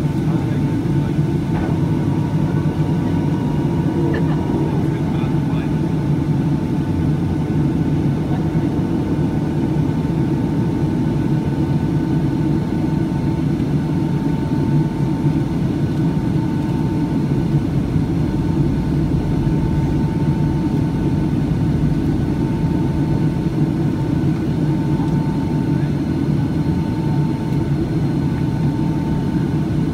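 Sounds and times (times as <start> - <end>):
jet engines and airflow rushing: 0.0 - 29.9
faint steady whine: 9.2 - 29.7.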